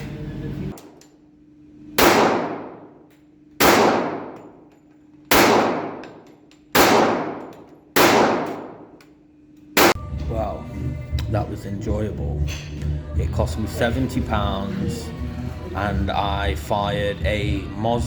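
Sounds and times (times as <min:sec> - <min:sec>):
gunshots with ringing echo: 0:02.0 - 0:03.0, 0:03.6 - 0:04.6, 0:05.3 - 0:09.0.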